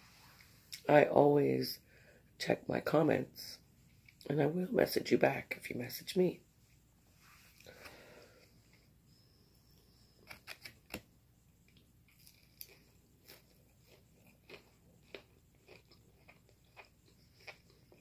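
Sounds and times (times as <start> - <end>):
person chewing food: 11.6 - 18.0.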